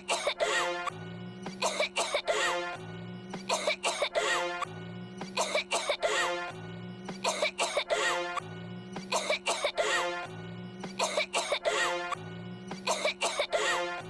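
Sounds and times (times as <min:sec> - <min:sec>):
person coughing: 0:00.0 - 0:00.7, 0:01.6 - 0:02.6, 0:03.5 - 0:04.5, 0:05.3 - 0:06.3, 0:07.2 - 0:08.4, 0:09.1 - 0:10.0, 0:11.0 - 0:11.8, 0:12.8 - 0:13.7.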